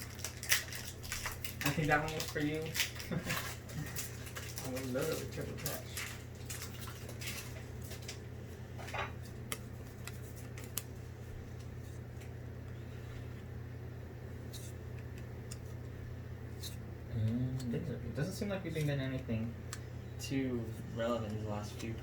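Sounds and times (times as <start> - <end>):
cards and wrappers rustling: 0.0 - 13.0.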